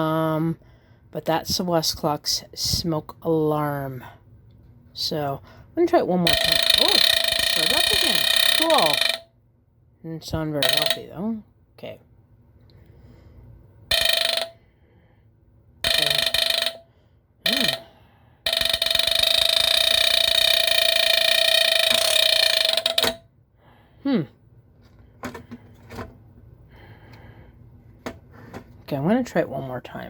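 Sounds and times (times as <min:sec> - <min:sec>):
smoke alarm squealing: 0:06.3 - 0:09.2, 0:15.8 - 0:16.8, 0:17.5 - 0:17.9, 0:18.5 - 0:23.2
smoke alarm chirp: 0:15.8 - 0:16.8.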